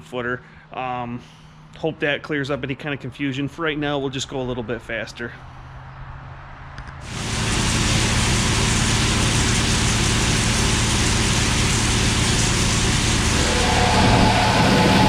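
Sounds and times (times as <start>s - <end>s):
combine diesel engine drone: 7.0s - 15.0s
dense rushing noise: 7.0s - 15.0s.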